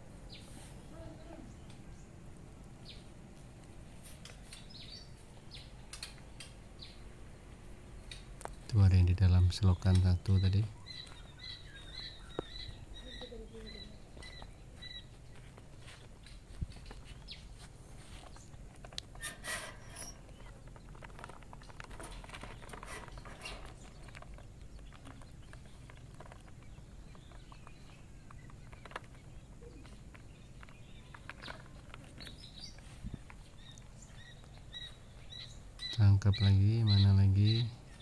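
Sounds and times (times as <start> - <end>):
rustling and soft clicks: 15.1 - 34.7
chicks peeping: 20.2 - 38.0.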